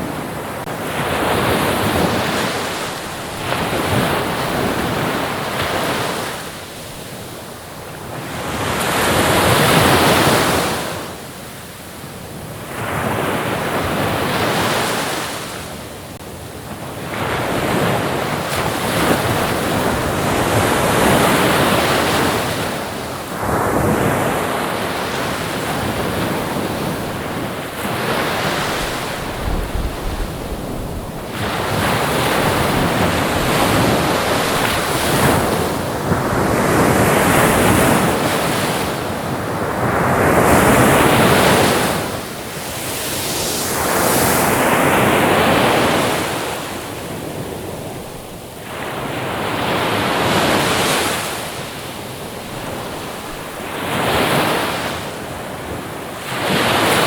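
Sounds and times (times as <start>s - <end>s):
ocean waves breaking on shore: 0.0s - 57.0s
wind noise: 12.7s - 51.6s.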